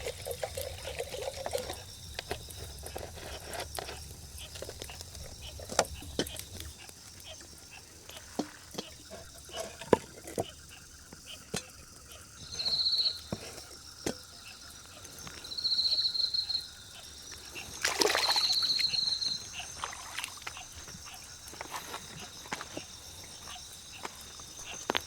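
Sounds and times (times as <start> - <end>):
insect pulsed trills: 0.0 - 25.0
splash-like rush: 17.8 - 18.6.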